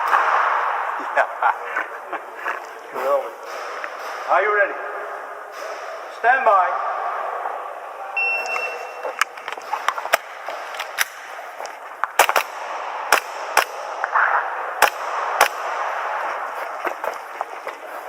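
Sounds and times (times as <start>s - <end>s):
shot timer beep: 8.2s - 9.2s
airsoft pistol shots: 12.2s - 16.2s.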